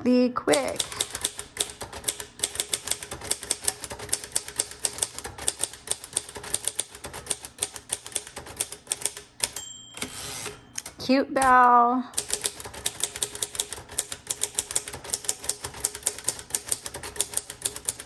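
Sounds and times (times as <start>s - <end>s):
typewriter key clacks: 0.8s - 11.6s, 12.2s - 18.0s
typewriter margin bell: 9.0s - 10.9s.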